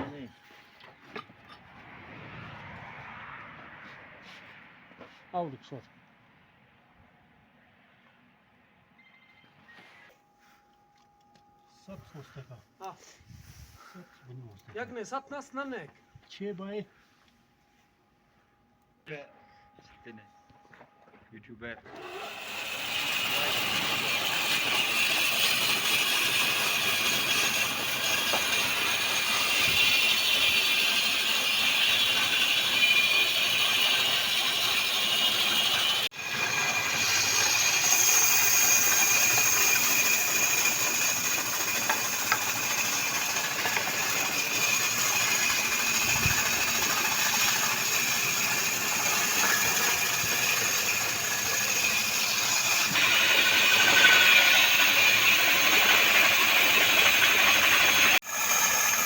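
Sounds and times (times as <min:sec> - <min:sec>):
sawmill machine running: 0:21.8 - 0:59.0.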